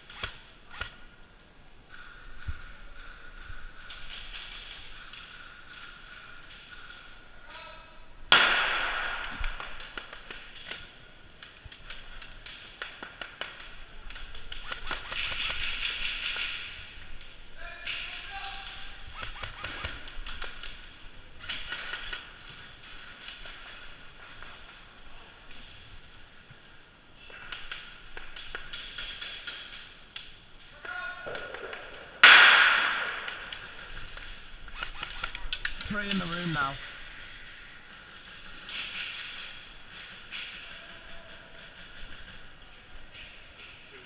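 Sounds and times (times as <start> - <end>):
airsoft gunshots: 8.3 - 9.6, 14.4 - 16.7, 18.9 - 20.4, 32.2 - 36.8
airsoft gun cracks: 8.3 - 23.4, 31.3 - 37.5.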